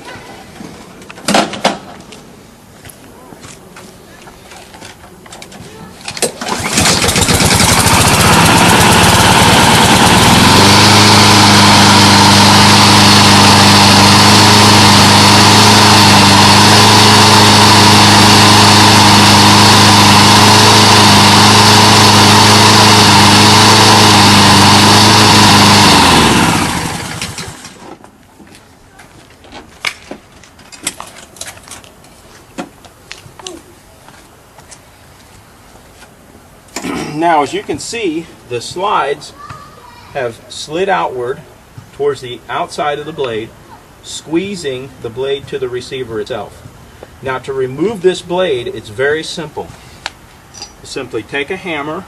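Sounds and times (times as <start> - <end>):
lawn mower engine running: 6.0 - 28.0.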